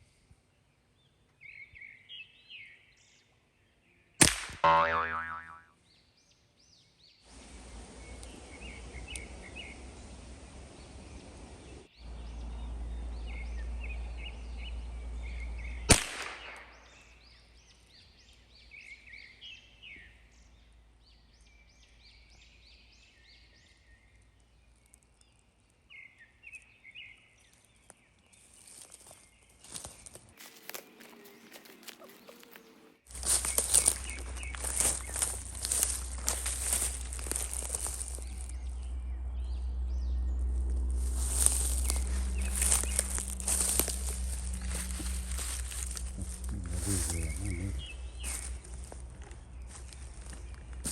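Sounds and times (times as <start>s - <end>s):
small birds chirping: 0.0s - 50.9s
rifle shot: 4.2s - 4.6s, 15.9s - 16.9s.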